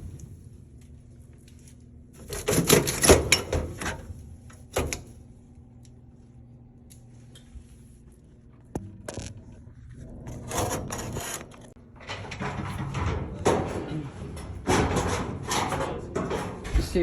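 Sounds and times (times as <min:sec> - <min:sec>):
scraping and rattling: 0:02.2 - 0:04.2, 0:09.1 - 0:17.0
low hum: 0:04.0 - 0:17.0.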